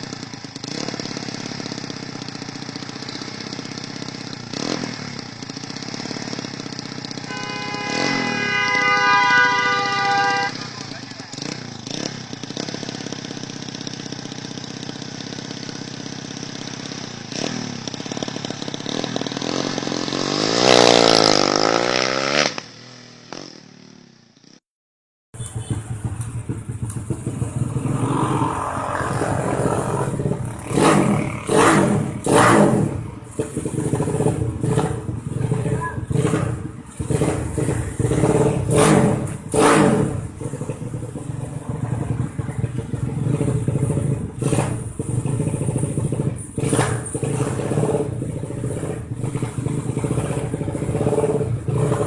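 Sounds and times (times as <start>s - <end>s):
engine revving in blips: 0.0s - 23.6s, 25.4s - 52.0s
motorcycle passing by: 0.0s - 24.1s, 25.4s - 52.0s.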